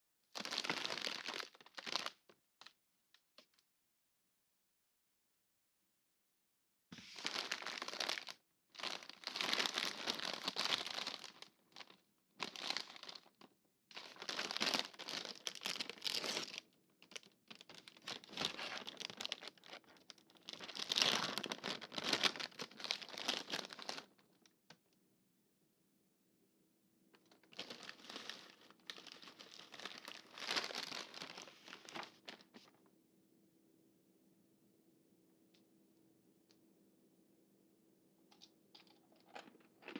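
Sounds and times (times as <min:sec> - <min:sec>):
snack packaging crinkling: 0:00.4 - 0:02.4, 0:07.2 - 0:24.2, 0:27.4 - 0:32.5.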